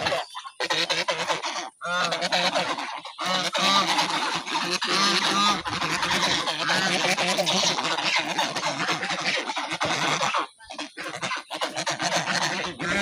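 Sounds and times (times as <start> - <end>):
waterfowl honking: 0.0 - 13.0.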